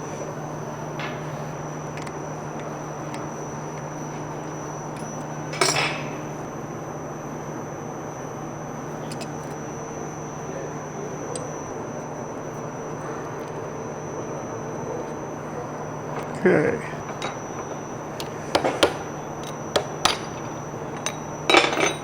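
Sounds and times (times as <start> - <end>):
steady hum: 0.0 - 22.0
metal tools clanking: 5.0 - 6.1, 17.0 - 22.0.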